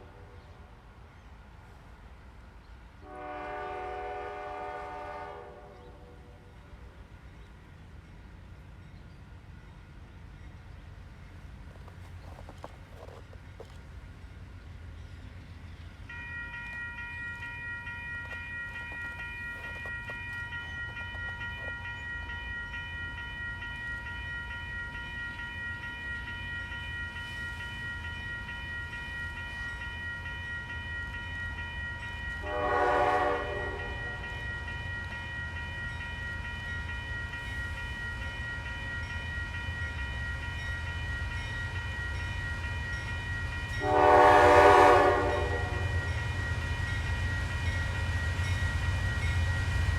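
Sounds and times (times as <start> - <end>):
diesel train engine rumble: 0.0 - 49.9
locomotive horn blasts: 3.0 - 6.4, 32.4 - 34.4, 43.8 - 46.2.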